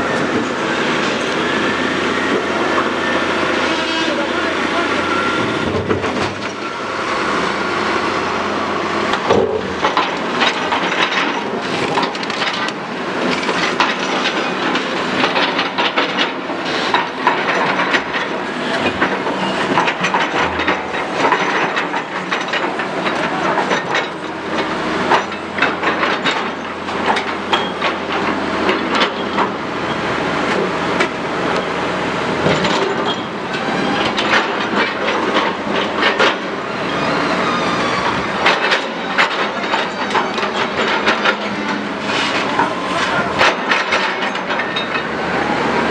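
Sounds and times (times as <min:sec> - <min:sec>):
heavy machinery grinding stone: 0:00.0 - 0:45.9
clanking knocks: 0:09.1 - 0:12.8.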